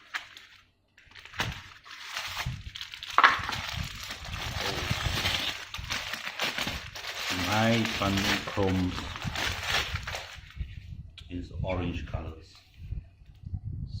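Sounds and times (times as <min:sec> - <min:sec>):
packaging rustling and crinkling: 0:00.0 - 0:10.8.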